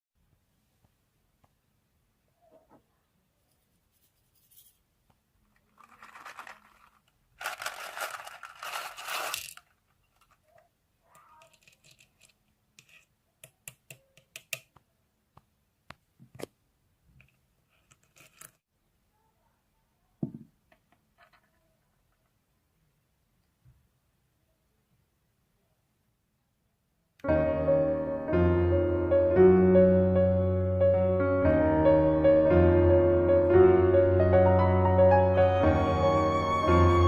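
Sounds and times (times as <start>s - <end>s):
ice scraping and rustling: 5.7s - 10.4s.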